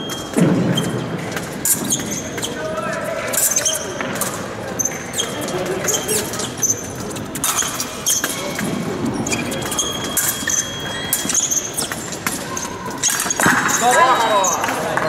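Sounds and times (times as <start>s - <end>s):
shoes squeaking sharply: 0.0s - 15.0s.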